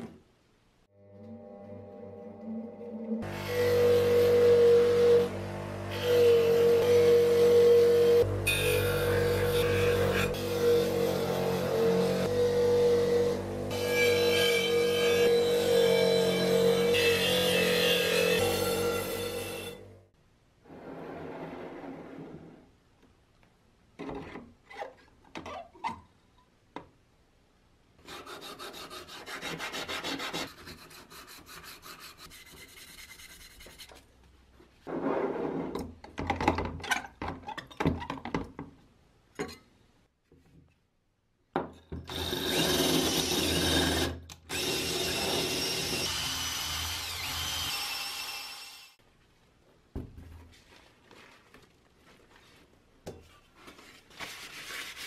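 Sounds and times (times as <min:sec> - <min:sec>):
small power tool running: 0:44.5 - 0:49.0.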